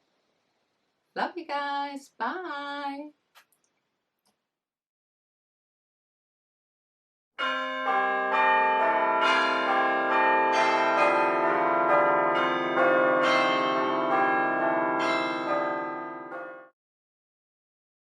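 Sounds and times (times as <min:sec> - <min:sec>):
bell-like chime melody: 0:07.4 - 0:16.7.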